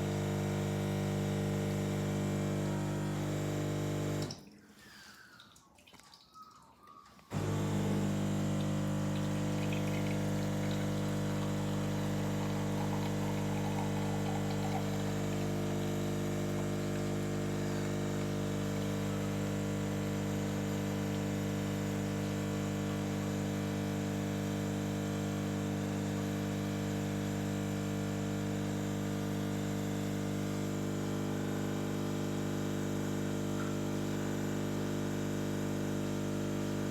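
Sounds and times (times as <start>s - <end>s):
coffee machine pump humming: 0.0s - 4.4s, 7.2s - 36.9s
liquid pouring: 3.1s - 19.0s.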